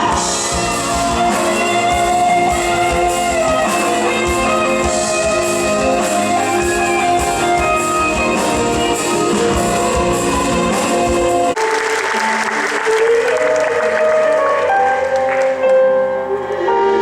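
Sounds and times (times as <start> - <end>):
steady drum beat: 0.0 - 11.6
instrumental music: 0.0 - 17.0.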